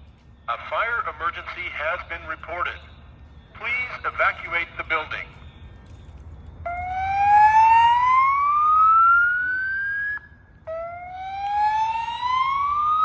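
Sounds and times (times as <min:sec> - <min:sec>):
fire alarm whoop tone: 0:06.7 - 0:13.0.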